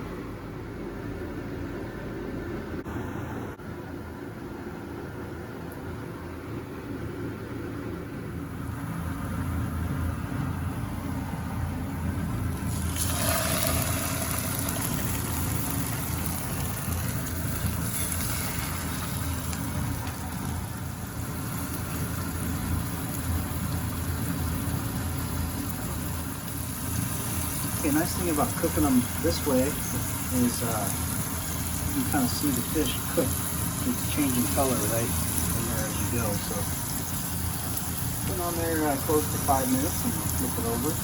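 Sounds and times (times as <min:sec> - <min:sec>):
fish sizzling in a frying pan: 0:12.6 - 0:41.0.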